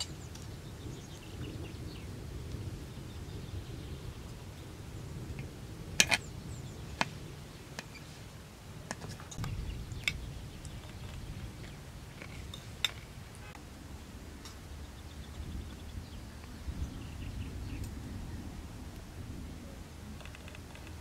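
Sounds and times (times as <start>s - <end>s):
low steady rumble: 9.3s - 21.0s.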